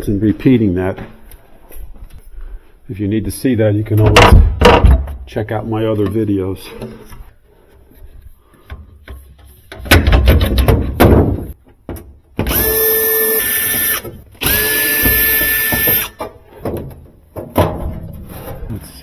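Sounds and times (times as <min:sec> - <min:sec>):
power drill whining: 0:12.5 - 0:16.2.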